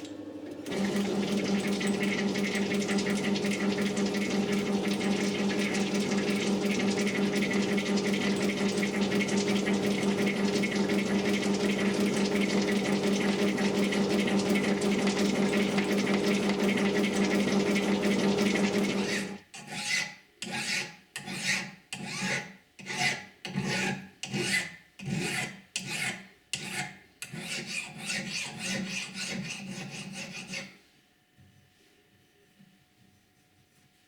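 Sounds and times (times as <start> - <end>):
file scraping on metal: 19.0 - 30.8.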